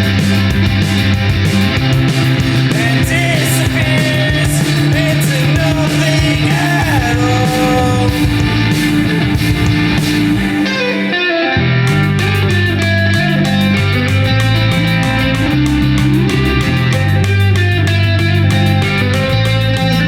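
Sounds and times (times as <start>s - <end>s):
drums with cymbal hits: 0.0s - 11.2s
distorted electric guitar chords: 0.0s - 20.0s
loud rock song by band: 0.0s - 20.0s.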